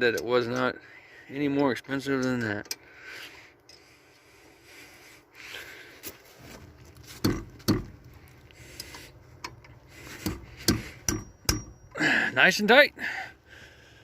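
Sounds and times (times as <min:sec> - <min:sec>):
sharp metal knocks: 0:07.2 - 0:08.0, 0:10.2 - 0:12.0.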